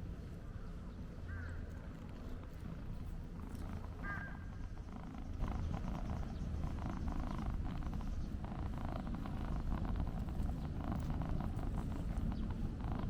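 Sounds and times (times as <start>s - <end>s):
cat purring: 2.6s - 13.0s.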